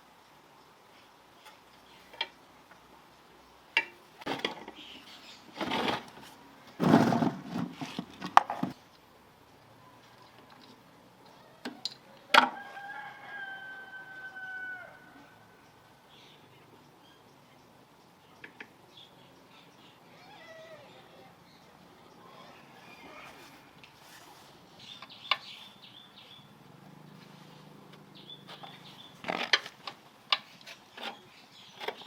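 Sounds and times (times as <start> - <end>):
rooster crowing: 12.4 - 15.6.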